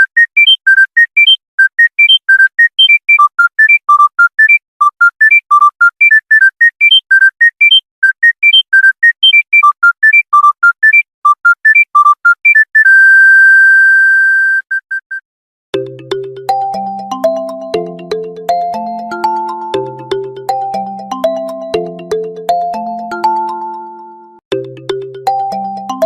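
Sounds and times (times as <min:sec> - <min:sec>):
monophonic phone ringtone beeps: 0:00.0 - 0:13.1
polyphonic phone ringtone: 0:00.0 - 0:13.2, 0:15.8 - 0:26.0.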